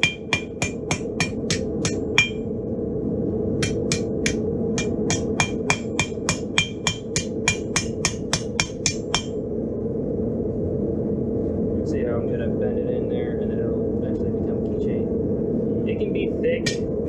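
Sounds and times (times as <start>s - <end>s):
hammer striking steel on anvil: 0.0s - 2.5s, 3.6s - 9.4s, 16.6s - 17.0s.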